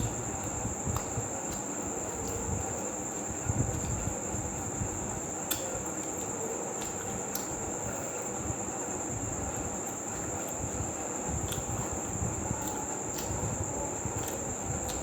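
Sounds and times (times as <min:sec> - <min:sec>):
person chewing food: 0:05.5 - 0:07.6, 0:14.1 - 0:15.0.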